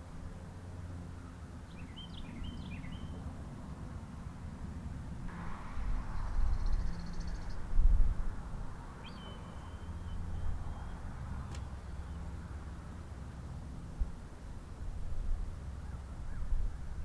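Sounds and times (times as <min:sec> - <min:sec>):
wind rumble on microphone: 0:05.3 - 0:08.9.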